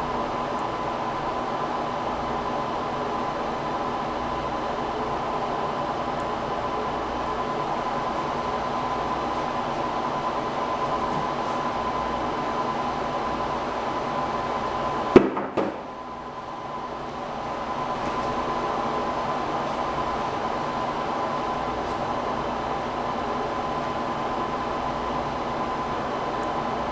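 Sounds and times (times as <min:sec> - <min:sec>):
mechanical hum with high tone: 0:00.0 - 0:26.9
tablet smacking the floor: 0:15.2 - 0:15.8
bounce knock: 0:15.2 - 0:15.9.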